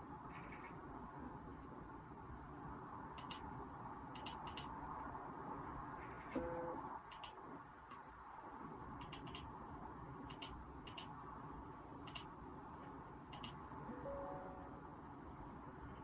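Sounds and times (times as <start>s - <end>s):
computer keyboard typing: 3.2s - 3.5s, 4.2s - 4.7s, 7.1s - 7.4s, 9.0s - 9.5s, 10.3s - 11.2s, 12.0s - 12.3s, 13.3s - 13.8s.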